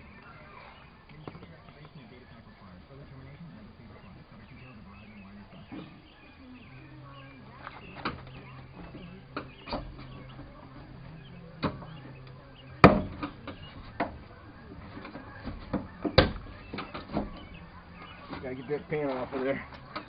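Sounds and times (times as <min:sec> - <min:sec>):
door panel clips clicking and knocking: 0:12.8 - 0:18.4.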